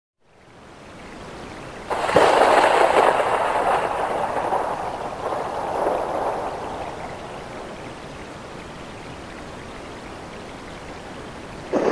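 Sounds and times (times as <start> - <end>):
steady rain: 0.3 - 11.9
thunderclap rolling: 1.9 - 8.0.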